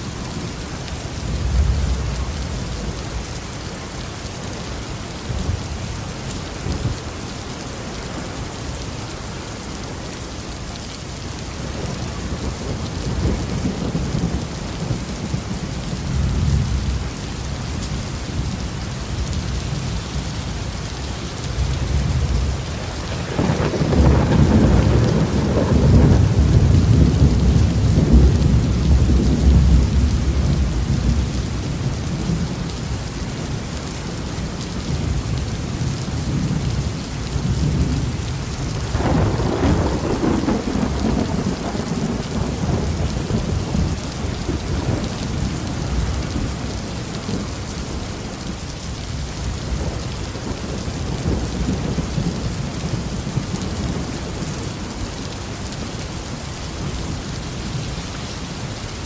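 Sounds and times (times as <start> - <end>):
heavy rain falling: 0.0 - 59.0
thunder rumbling: 1.0 - 3.5, 21.4 - 32.8, 34.9 - 47.9, 49.5 - 54.8.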